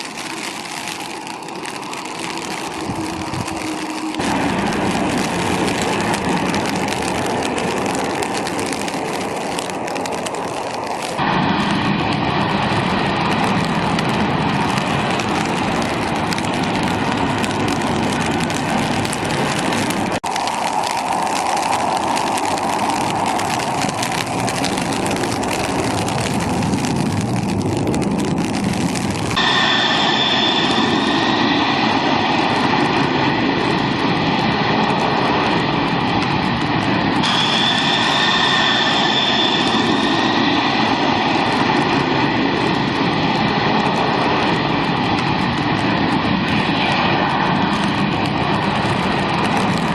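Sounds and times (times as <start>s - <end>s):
jet airliner engines running: 0.0s - 49.9s
high-pitched steady whine: 29.3s - 33.9s, 37.2s - 43.0s.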